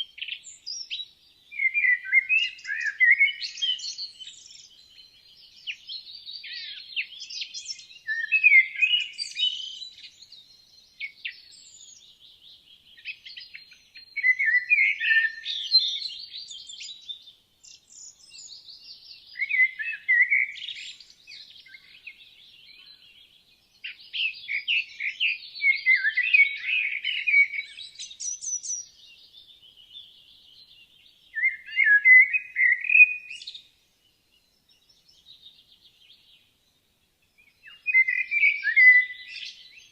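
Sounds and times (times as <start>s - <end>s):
songbird repeating song phrase: 0.0s - 33.7s, 37.4s - 39.9s
birds chirping and twittering: 0.0s - 39.9s.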